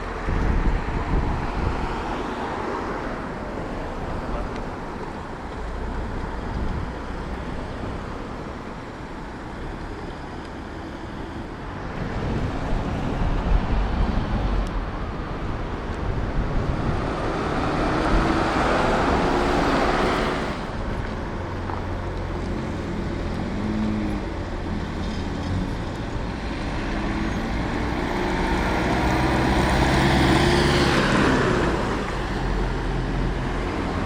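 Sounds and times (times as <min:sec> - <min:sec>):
road traffic: 0:00.0 - 0:34.0
vehicle passing close by: 0:11.8 - 0:20.9, 0:22.4 - 0:34.0.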